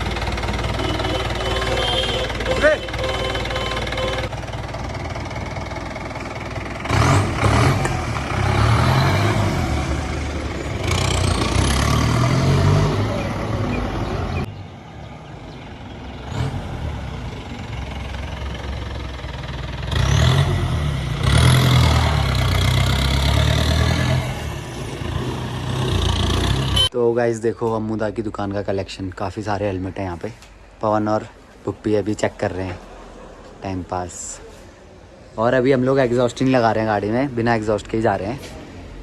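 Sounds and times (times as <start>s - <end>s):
vehicle engine revving: 0.0s - 14.5s, 16.2s - 26.9s.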